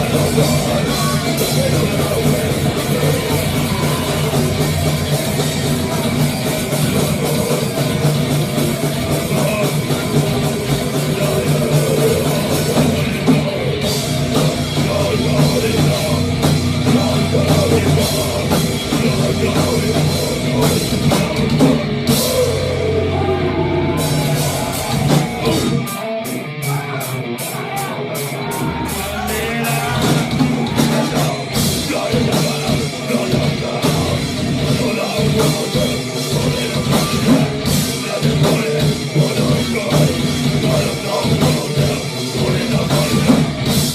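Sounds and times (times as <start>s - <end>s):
drum kit heavy beat: 0.0s - 43.9s
rock band playing live: 0.0s - 43.9s.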